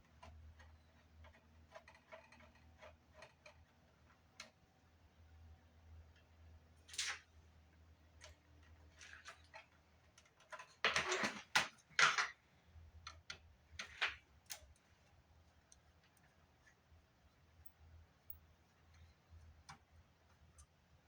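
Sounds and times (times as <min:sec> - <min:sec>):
faint low hum: 0:12.3 - 0:21.0.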